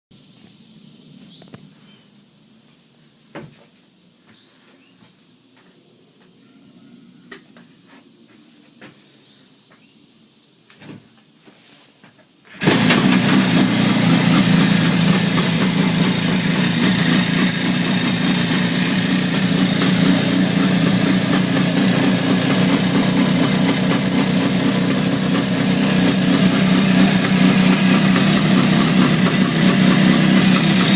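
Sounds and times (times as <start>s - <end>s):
motorcycle engine starting and idling: 12.5s - 30.9s.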